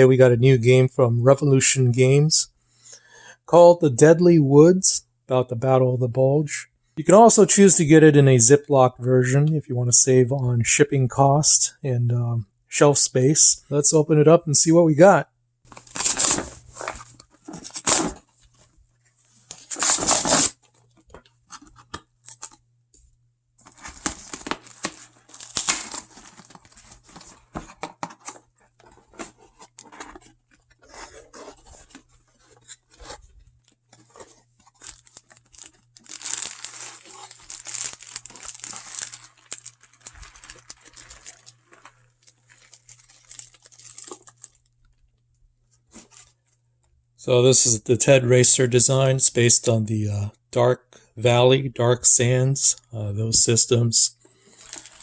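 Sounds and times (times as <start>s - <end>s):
plastic wrap ripping: 15.7s - 16.7s, 19.6s - 20.6s, 23.7s - 26.8s, 34.1s - 44.7s
plastic crinkling and rustling: 23.6s - 45.1s, 54.4s - 55.0s.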